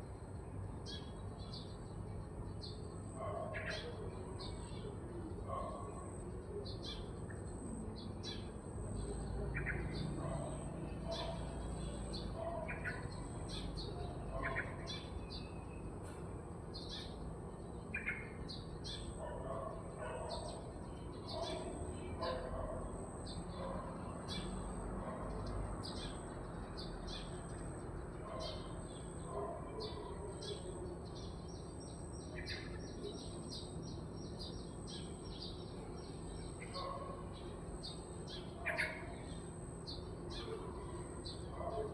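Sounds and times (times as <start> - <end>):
birds chirping: 0.0 - 41.9
bird trill: 25.9 - 41.9.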